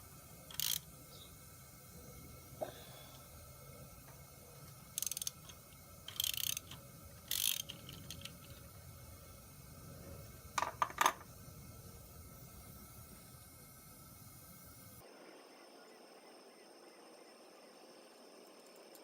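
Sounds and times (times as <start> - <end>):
ratchet clicking: 0.0 - 1.2, 4.0 - 8.7
sharp metallic clicks: 0.5 - 1.0, 4.1 - 8.6.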